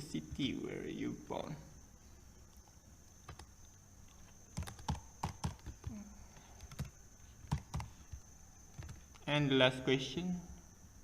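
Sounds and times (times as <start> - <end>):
typing on computer keyboard: 4.2 - 8.1, 8.7 - 9.2.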